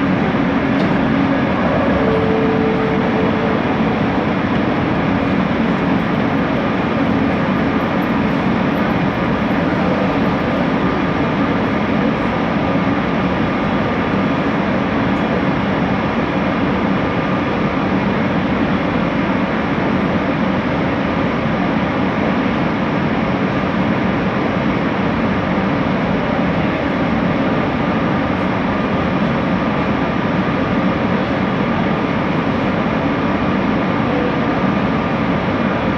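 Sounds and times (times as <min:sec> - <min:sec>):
short steady hum: 0:00.0 - 0:12.0
metro train rumbling: 0:00.0 - 0:35.9.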